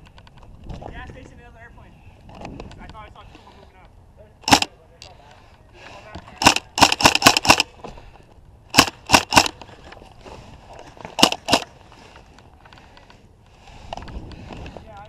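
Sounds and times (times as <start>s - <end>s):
airsoft gun shots: 4.4s - 4.7s, 6.4s - 7.7s, 8.7s - 9.6s, 11.2s - 11.6s.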